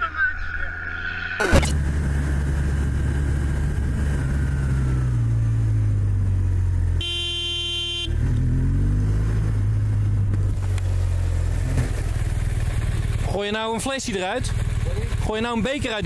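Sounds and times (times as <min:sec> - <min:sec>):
vehicle engine running: 0:01.4 - 0:16.0
vehicle horn blast: 0:07.0 - 0:08.2.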